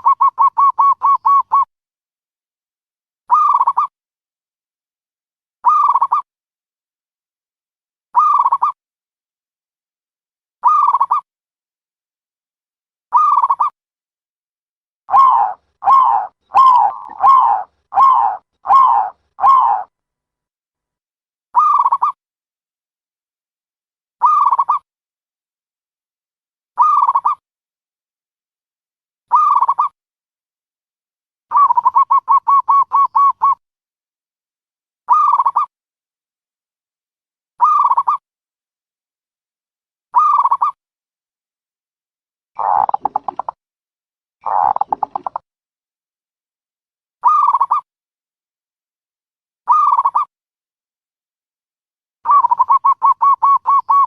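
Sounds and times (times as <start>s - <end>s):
dove cooing: 15.1s - 19.9s, 42.6s - 43.5s, 44.5s - 45.4s, 52.3s - 54.0s.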